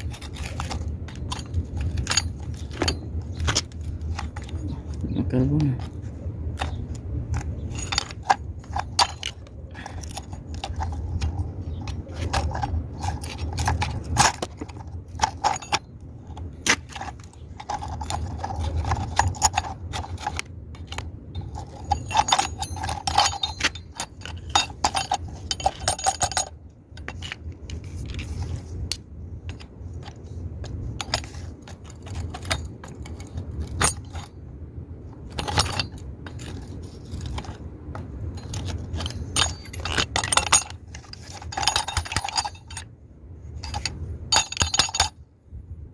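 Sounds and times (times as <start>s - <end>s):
low steady hum: 0.0s - 45.9s
metal tool scraping carbon: 5.8s - 28.8s.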